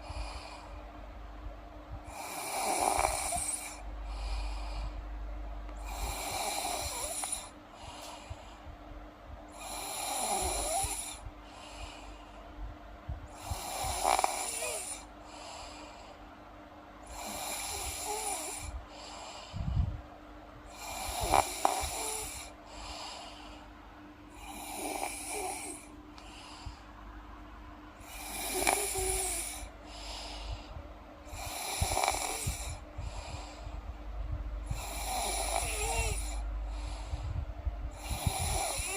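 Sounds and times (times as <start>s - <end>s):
girl snoring: 2.1s - 3.8s, 5.8s - 7.5s, 9.6s - 11.2s, 13.4s - 15.1s, 17.1s - 18.7s, 20.7s - 22.6s, 24.4s - 25.9s, 28.0s - 29.7s, 31.3s - 32.8s, 34.6s - 37.2s, 37.9s - 38.9s.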